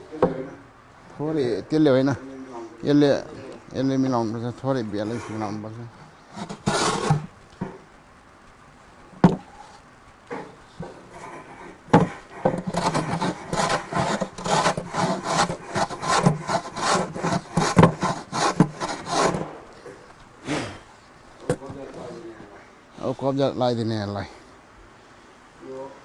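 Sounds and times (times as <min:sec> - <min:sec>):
wood scraped by hand: 0:06.0 - 0:07.8, 0:09.2 - 0:20.1
sharp wooden knocks: 0:06.4 - 0:07.8, 0:09.2 - 0:09.5, 0:11.9 - 0:19.6.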